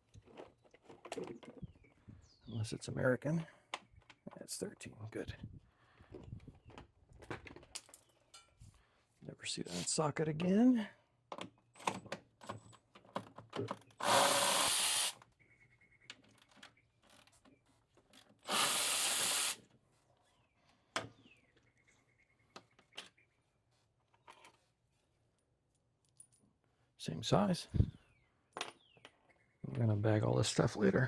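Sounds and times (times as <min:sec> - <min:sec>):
tool handling clicks and knocks: 0:11.3 - 0:14.1
ratchet loosening bolts: 0:14.0 - 0:15.2, 0:18.5 - 0:19.6.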